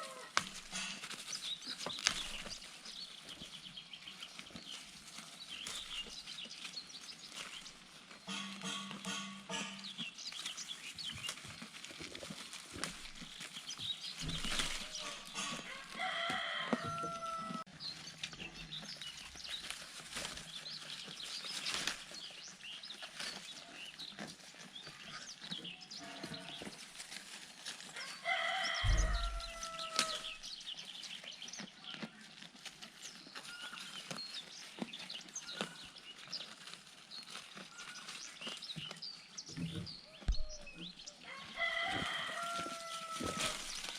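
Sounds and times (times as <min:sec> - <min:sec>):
small birds chirping: 0:00.0 - 0:43.9
rooster-like call: 0:15.6 - 0:17.7, 0:28.0 - 0:30.3, 0:40.3 - 0:43.7
short low thud: 0:28.9 - 0:29.5, 0:40.3 - 0:40.8.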